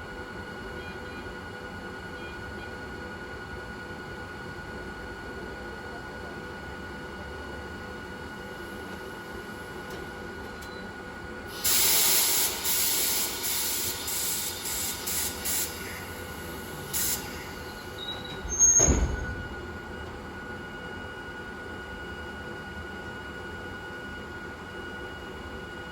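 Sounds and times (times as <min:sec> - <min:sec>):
compressed air hissing bursts: 0:11.5 - 0:19.3
brief squeal: 0:17.0 - 0:19.6
heavy clunk: 0:18.2 - 0:20.3.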